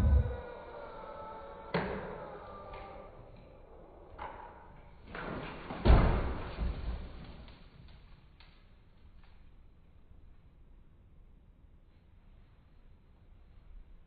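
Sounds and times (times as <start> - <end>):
heavy thud: 0.0 - 0.4.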